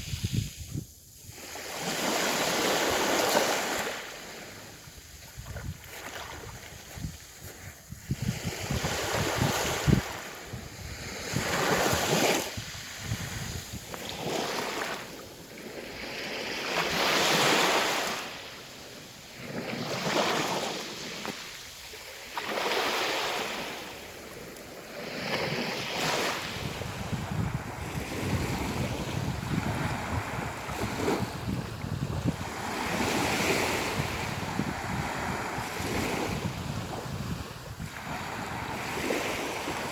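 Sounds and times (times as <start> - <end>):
wind rumbling on microphone: 0.0 - 17.6, 24.1 - 39.9.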